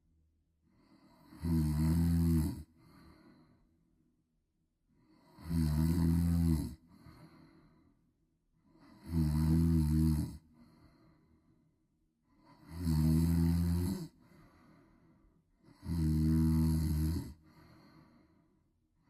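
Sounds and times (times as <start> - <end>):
person snoring: 0.8 - 3.4, 5.0 - 7.5, 8.8 - 10.9, 12.4 - 14.8, 15.6 - 18.2.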